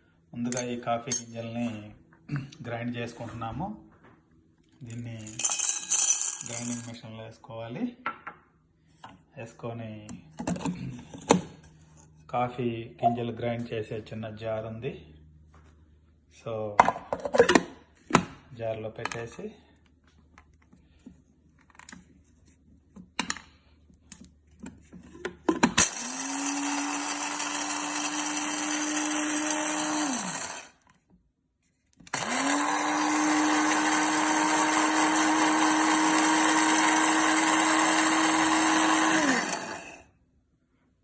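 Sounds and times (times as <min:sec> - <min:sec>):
grinder motor grinding coffee beans: 0:05.2 - 0:06.9, 0:25.6 - 0:31.0, 0:32.0 - 0:40.1.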